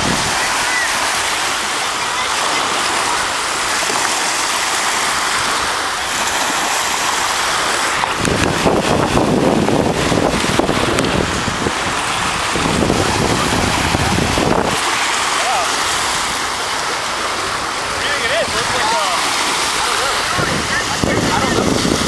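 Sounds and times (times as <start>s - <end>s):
wind buffeting microphone: 0.0s - 1.1s, 7.9s - 15.0s, 20.1s - 22.0s
surf washing on beach: 0.0s - 22.0s.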